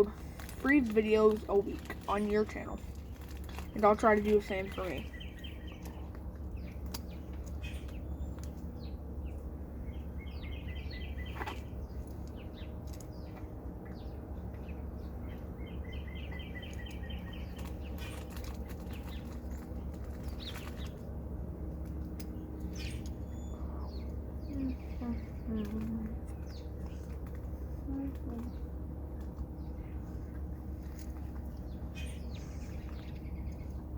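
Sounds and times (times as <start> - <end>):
birds chirping: 0.0 - 33.9
steady low hum: 0.0 - 33.9
bird trill: 9.9 - 13.3.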